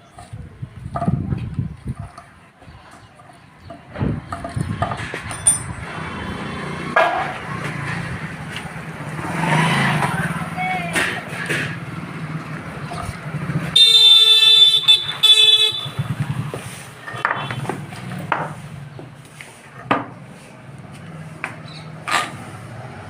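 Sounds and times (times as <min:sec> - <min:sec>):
vehicle horn honking: 0:13.7 - 0:16.1, 0:17.2 - 0:17.7.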